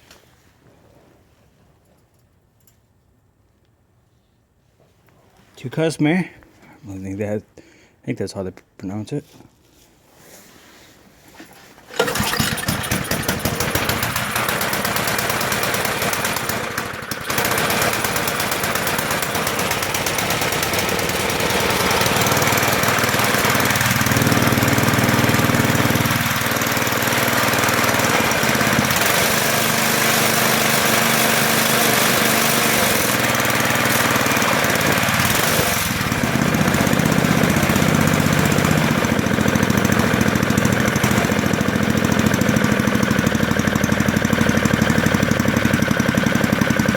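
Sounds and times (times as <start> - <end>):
snowblower engine running: 11.9 - 46.9.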